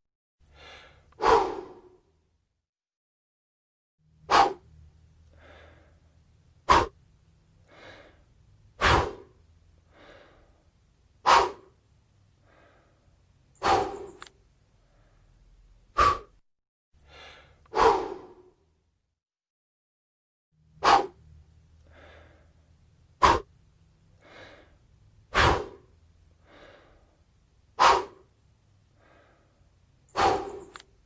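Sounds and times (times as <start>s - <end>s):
sharp puffs of breath: 0.4s - 2.0s, 4.2s - 7.0s, 7.6s - 11.8s, 12.4s - 15.3s, 15.9s - 16.4s, 17.0s - 18.6s, 20.7s - 23.5s, 24.2s - 28.3s, 28.9s - 30.8s
faint breaths drawn in: 0.4s - 2.1s, 4.2s - 7.0s, 7.6s - 16.4s, 17.0s - 18.6s, 20.7s - 23.5s, 24.1s - 31.0s.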